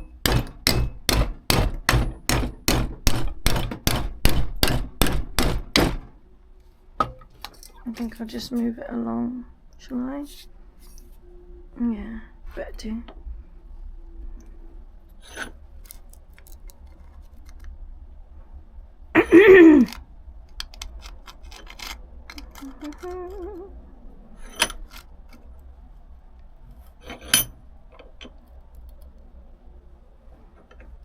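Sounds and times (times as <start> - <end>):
sharp metal clanks: 0.0 - 6.0
metallic clicks and knocks: 0.0 - 6.1.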